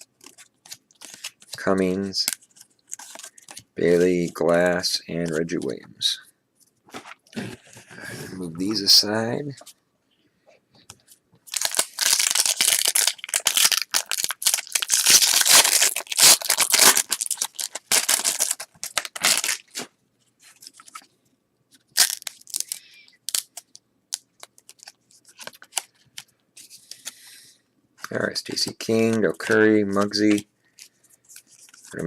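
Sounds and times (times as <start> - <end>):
wrapper crinkling: 11.5 - 19.9, 21.9 - 23.7.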